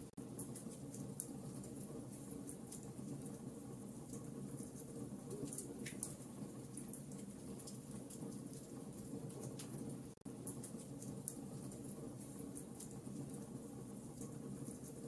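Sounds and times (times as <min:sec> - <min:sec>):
fire crackling and popping: 0:04.0 - 0:15.0.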